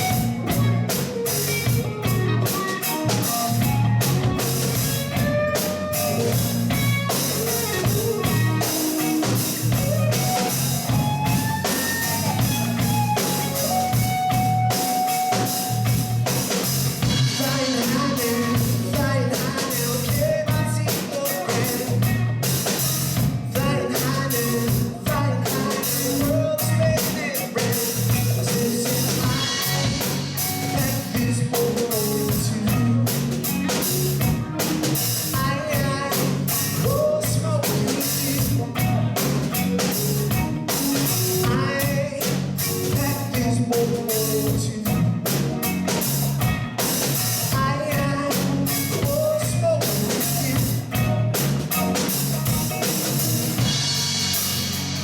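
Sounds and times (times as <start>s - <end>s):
lead electric guitar solo: 0.0s - 17.4s
bass guitar: 0.0s - 55.0s
drum kit: 0.0s - 55.0s.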